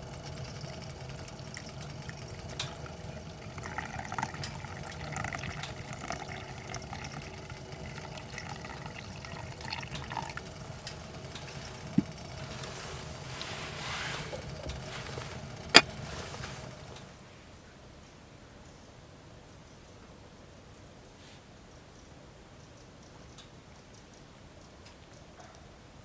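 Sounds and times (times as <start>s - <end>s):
water trickling and splashing: 0.0s - 17.2s
low background hum: 0.0s - 17.6s
small knocks: 9.9s - 17.1s.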